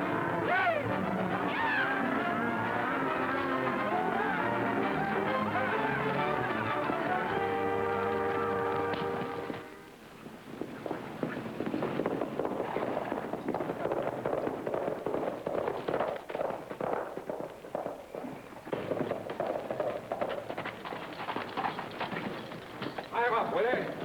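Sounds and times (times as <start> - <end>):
horses galloping: 0.0 - 24.0.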